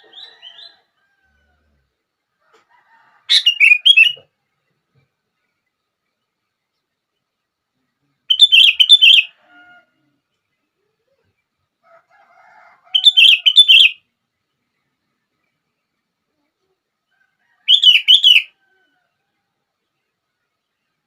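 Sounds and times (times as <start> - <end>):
soft bird calls: 16.3 - 19.0.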